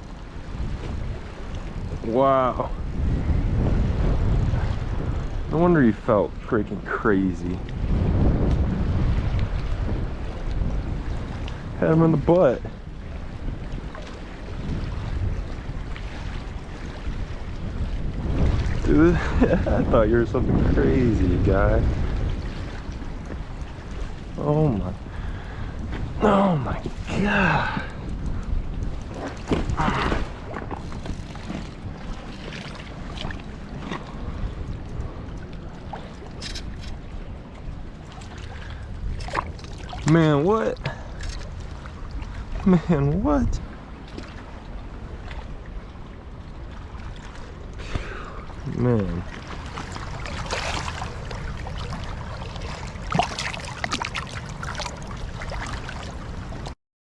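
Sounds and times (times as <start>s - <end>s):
moving water: 0.0s - 56.8s
wind rumbling on microphone: 0.0s - 56.8s.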